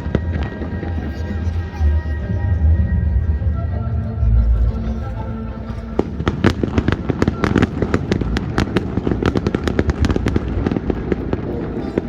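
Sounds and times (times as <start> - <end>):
fireworks bangs and crackles: 0.0 - 1.7, 6.0 - 12.0
low rumbling: 0.0 - 12.0.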